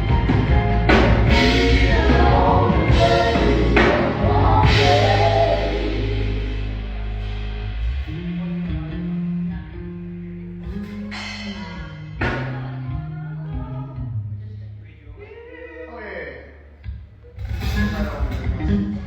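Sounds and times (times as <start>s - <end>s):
instrumental band music: 0.0s - 13.1s.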